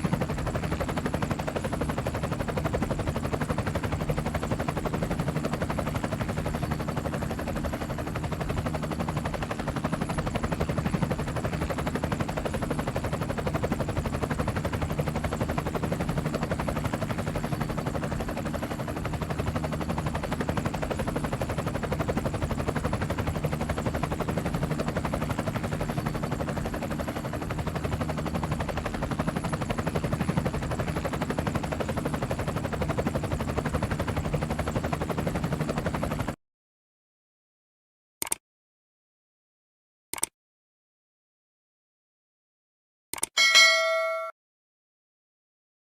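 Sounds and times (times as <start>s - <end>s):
helicopter rotor chopping: 0.0s - 36.3s.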